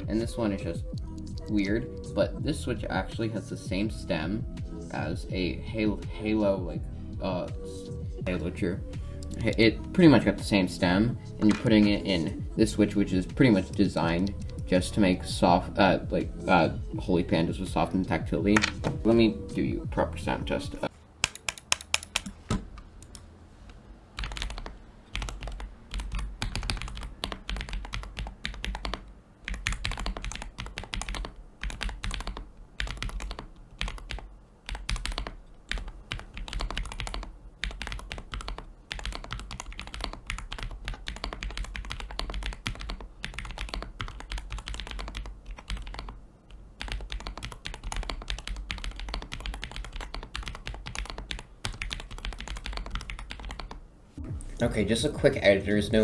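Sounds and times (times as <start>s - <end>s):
fast typing on keyboard: 21.2s - 23.2s, 24.2s - 53.8s.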